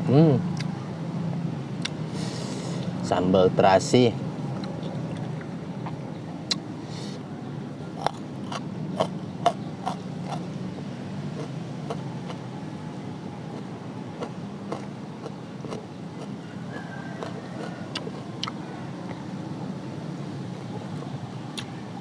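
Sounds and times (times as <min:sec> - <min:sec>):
person chewing food: 0:08.0 - 0:10.5, 0:11.4 - 0:12.4, 0:13.5 - 0:19.2.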